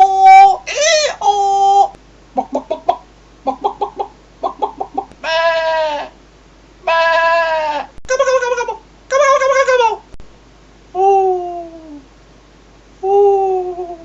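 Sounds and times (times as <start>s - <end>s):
goat bleating: 5.2s - 6.1s, 6.8s - 8.0s.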